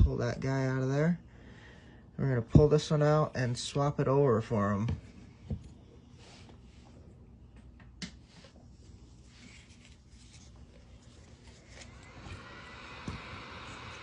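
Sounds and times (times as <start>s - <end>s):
soft scrapes and rustles: 8.2s - 12.0s.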